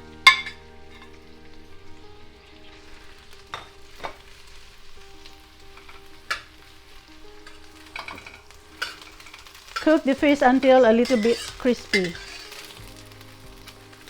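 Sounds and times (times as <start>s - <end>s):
fish sizzling in oil: 0.0s - 14.0s
utensil clinking against pan: 7.4s - 12.8s.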